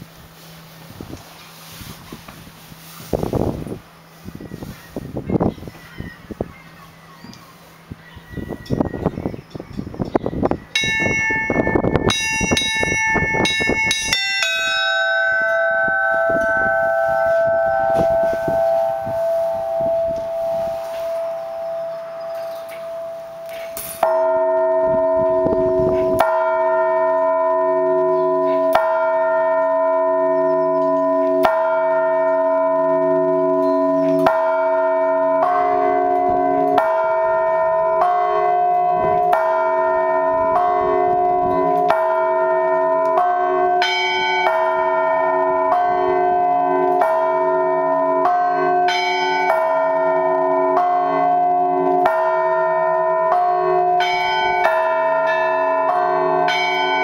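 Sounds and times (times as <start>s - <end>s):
medium church bells ringing: 4.6s - 57.0s
deep church bell struck slowly: 8.6s - 57.0s
steady hum: 10.4s - 28.1s.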